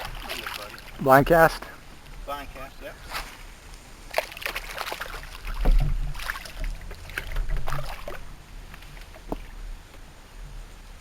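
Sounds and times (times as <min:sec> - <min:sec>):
water splashing around a boat: 0:00.0 - 0:11.0
knocks and clicks on a boat: 0:05.5 - 0:08.3, 0:09.1 - 0:10.0.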